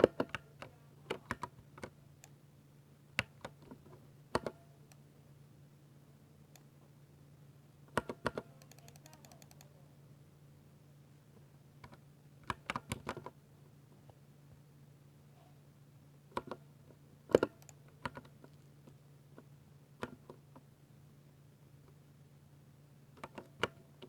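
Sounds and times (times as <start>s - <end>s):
mechanical keyboard keystrokes: 0.0s - 2.4s, 8.0s - 9.7s
faint low hum: 0.0s - 24.0s.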